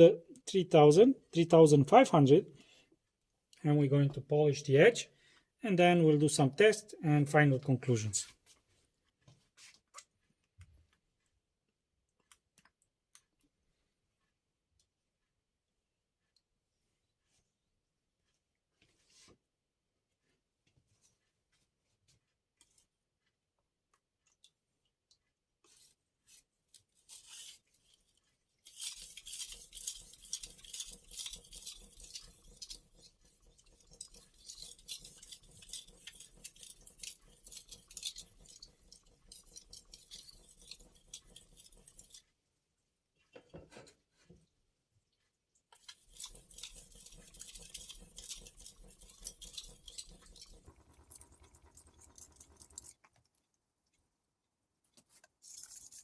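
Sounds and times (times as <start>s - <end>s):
knife blade scraping on whetstone: 28.6s - 42.2s, 45.9s - 51.5s.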